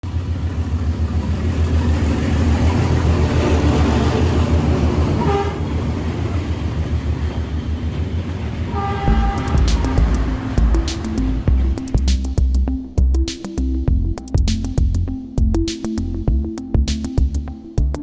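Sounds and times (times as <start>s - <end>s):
train rumbling on tracks: 0.0s - 12.1s
train horn toot: 5.0s - 6.0s, 8.7s - 11.1s.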